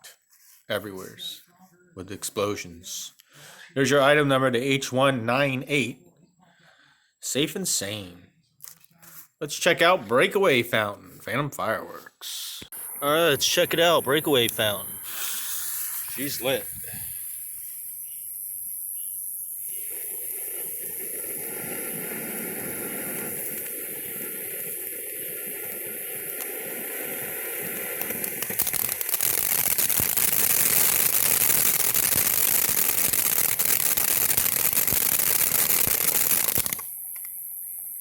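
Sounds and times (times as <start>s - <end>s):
firework crackling: 12.7s - 38.0s
firework fountain hissing: 12.7s - 38.0s.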